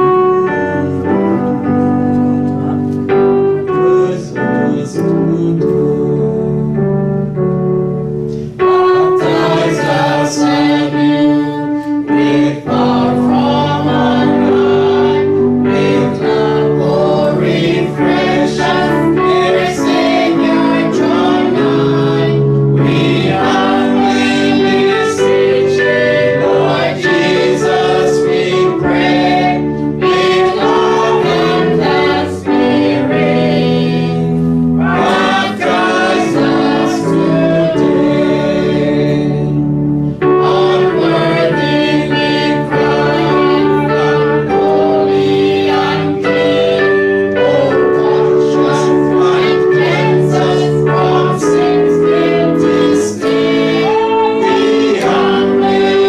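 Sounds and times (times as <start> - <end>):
congregation singing a hymn: 0.0 - 56.0
keyboard accompaniment: 0.0 - 56.0.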